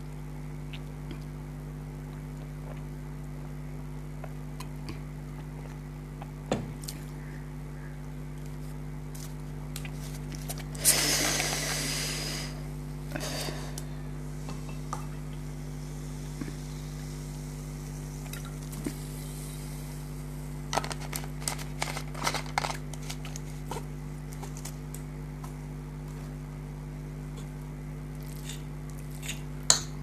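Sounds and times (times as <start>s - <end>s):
steady low hum: 0.0s - 30.0s
eating noodles mouth noises: 28.2s - 29.5s.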